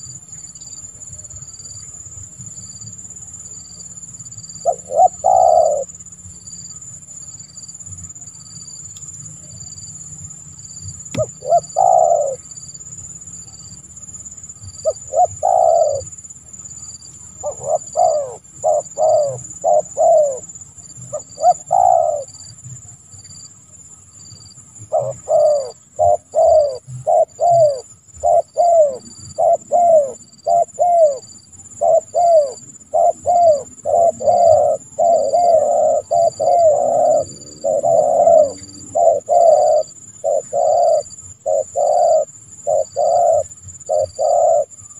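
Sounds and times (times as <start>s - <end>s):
dove cooing: 4.4s - 6.2s, 11.1s - 13.0s, 14.6s - 16.2s, 17.2s - 22.8s, 24.8s - 44.9s.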